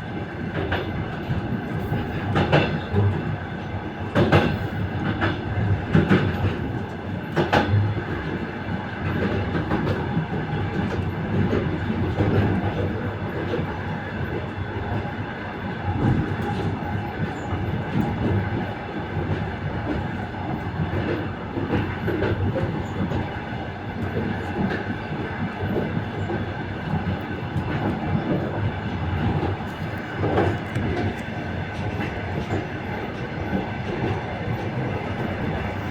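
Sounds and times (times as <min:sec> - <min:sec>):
running train rumble: 0:00.0 - 0:35.9
train wheels clattering over rail joints: 0:00.5 - 0:03.4, 0:04.0 - 0:13.7, 0:24.0 - 0:35.9.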